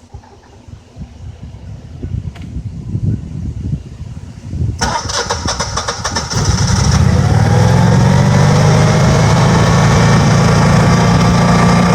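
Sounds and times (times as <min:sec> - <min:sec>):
generator starter cranking: 0:04.8 - 0:07.6
generator engine running: 0:04.8 - 0:11.9.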